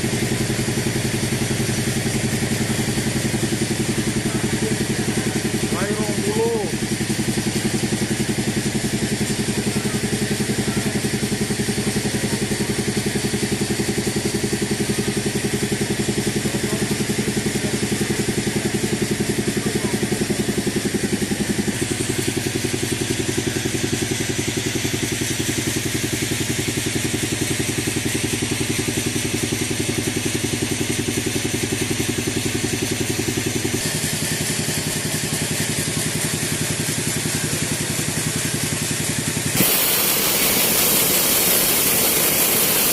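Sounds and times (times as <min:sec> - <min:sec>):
engine running with low drone: 0:00.0 - 0:42.9.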